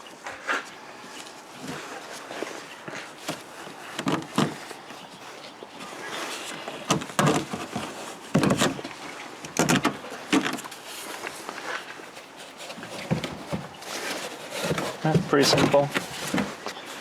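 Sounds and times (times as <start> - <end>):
rustling: 0.0 - 17.0.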